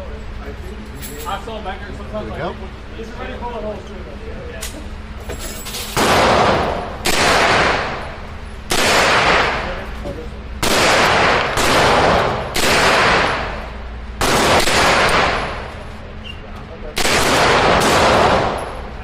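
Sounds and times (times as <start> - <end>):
carbine gunshots with echo: 6.0 - 9.9, 10.6 - 15.7, 16.9 - 18.8.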